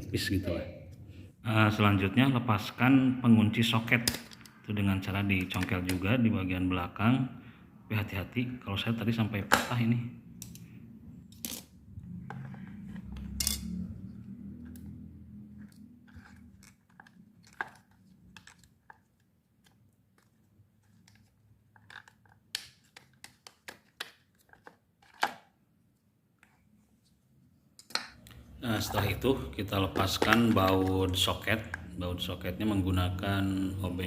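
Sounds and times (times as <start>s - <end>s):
screwdriver clicking and scraping plastic: 15.6s - 25.4s.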